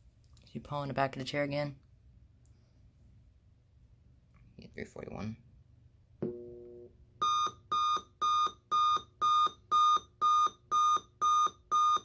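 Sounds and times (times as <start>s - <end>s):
clock radio alarm beeping: 7.2s - 12.0s.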